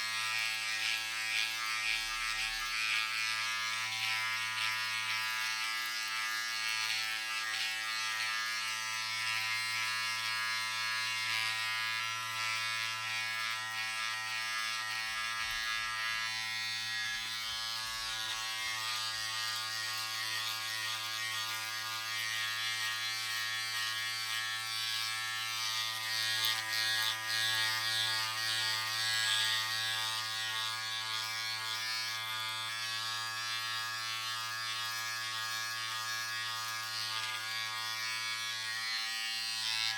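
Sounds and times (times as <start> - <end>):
electric razor buzzing: 0.0 - 39.9.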